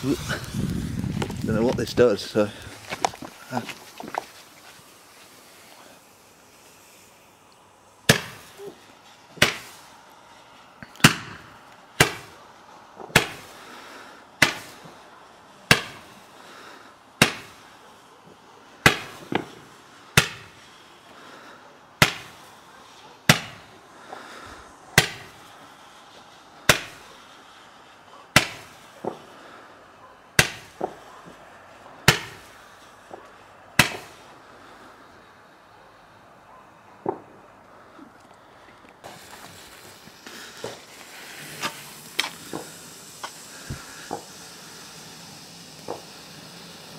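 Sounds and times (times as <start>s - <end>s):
firework bangs: 0.0s - 16.6s, 17.2s - 21.1s, 21.8s - 34.9s, 36.9s - 37.5s, 39.0s - 46.9s
small firework pops: 7.5s - 9.9s, 10.8s - 12.4s, 13.0s - 13.6s, 14.4s - 15.0s, 15.7s - 16.2s, 17.2s - 20.7s, 22.0s - 24.2s, 24.9s - 27.6s, 28.2s - 29.4s, 30.3s - 34.3s, 37.0s - 37.4s, 38.9s - 46.9s.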